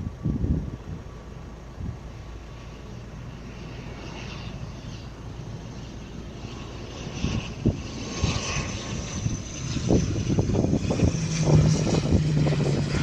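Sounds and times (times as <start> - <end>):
turboprop engines running: 0.0 - 13.0.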